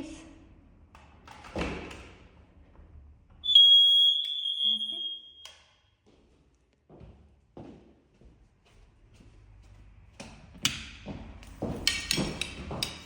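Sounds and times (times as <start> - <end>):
smoke alarm high tone: 3.4 - 5.5.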